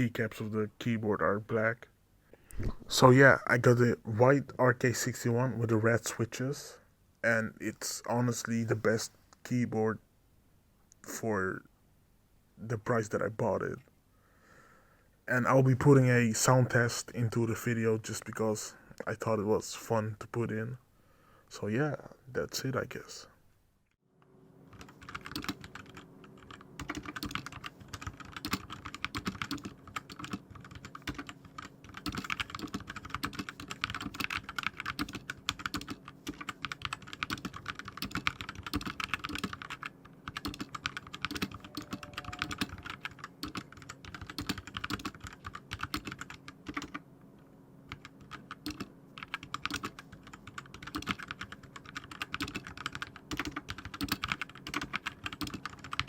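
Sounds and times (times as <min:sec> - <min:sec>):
mechanical keyboard keystroke clacks: 0:24.8 - 0:47.0, 0:47.9 - 0:56.0.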